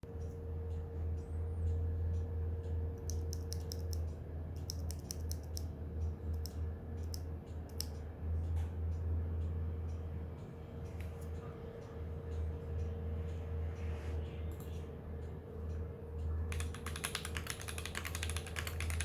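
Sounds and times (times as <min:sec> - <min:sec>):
steady low hum: 0:00.0 - 0:19.0
mechanical keyboard keystroke clacks: 0:03.0 - 0:05.7, 0:16.5 - 0:19.0.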